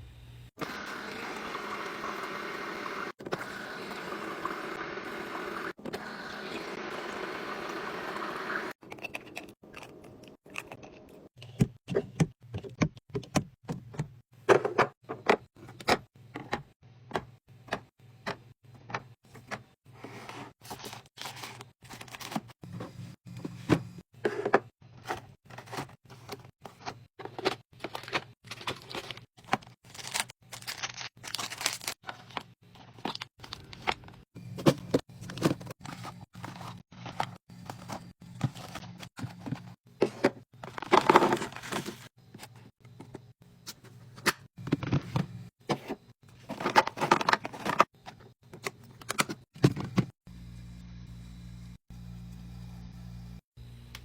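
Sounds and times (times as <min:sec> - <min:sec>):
packaging and bottles clicking: 0:27.3 - 0:39.6.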